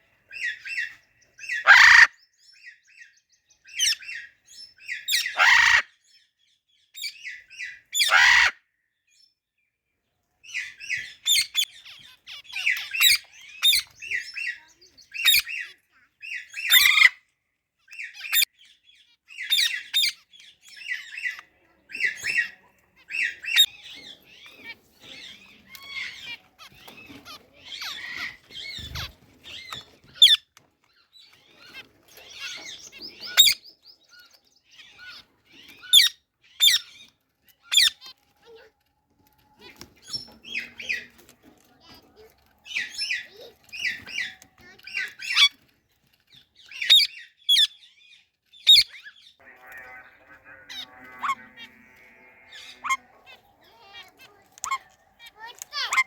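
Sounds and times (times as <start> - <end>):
parrots chirping: 0.3 - 3.0, 3.6 - 6.1, 7.0 - 8.6, 10.4 - 56.0
parrot squawk: 1.5 - 2.1, 5.1 - 5.9, 8.0 - 8.6, 16.5 - 17.2, 35.8 - 37.0, 46.8 - 47.7, 48.7 - 56.0.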